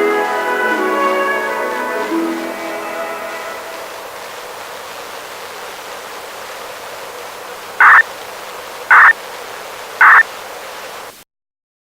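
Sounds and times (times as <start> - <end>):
radio static hiss: 3.7 - 11.2
short loud beeps: 7.8 - 8.0, 8.9 - 9.1, 10.0 - 10.2.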